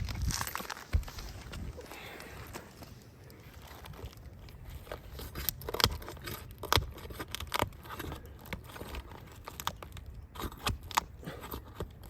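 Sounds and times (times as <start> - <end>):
shingles scraping: 2.5 - 12.0.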